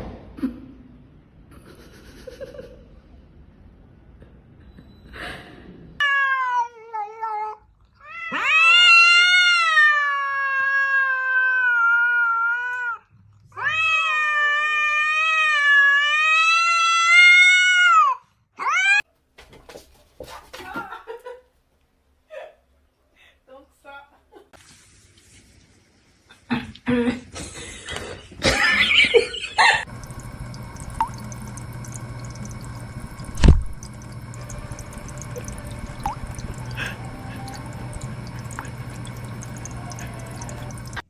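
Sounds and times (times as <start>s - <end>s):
cat yowling: 6.0s - 19.0s.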